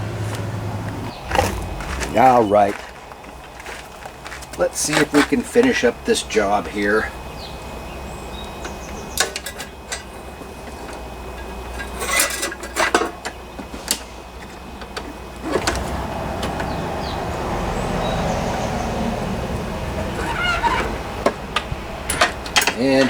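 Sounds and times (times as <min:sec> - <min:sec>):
tools clicking and clinking: 0:21.6 - 0:23.0.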